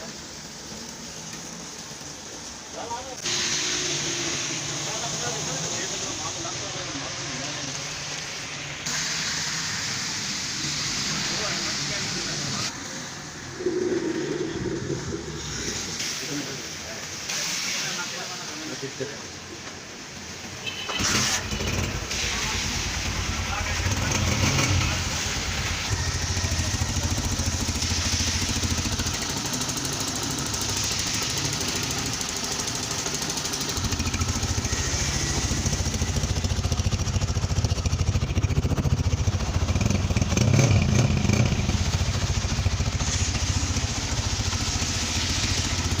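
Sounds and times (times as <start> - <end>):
motorcycle engine idling: 26.0 - 46.0.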